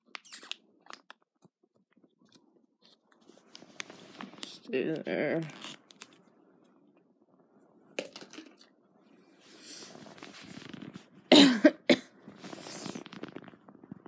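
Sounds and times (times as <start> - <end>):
person coughing: 11.3 - 12.1.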